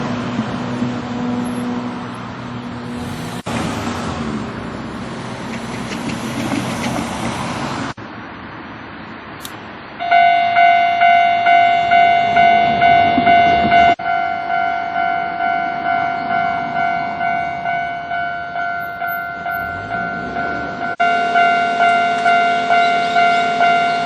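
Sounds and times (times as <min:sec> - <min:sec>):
level crossing warning bell: 0:10.0 - 0:24.0.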